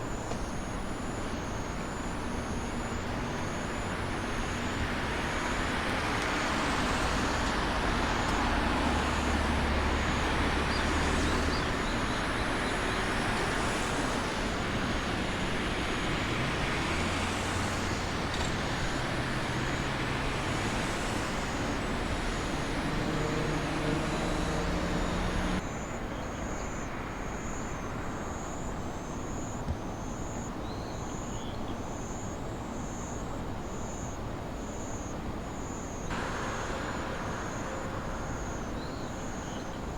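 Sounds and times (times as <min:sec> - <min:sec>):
electric train running past: 0:00.1 - 0:28.7, 0:34.8 - 0:39.9
motor hum rising in pitch: 0:19.4 - 0:25.6.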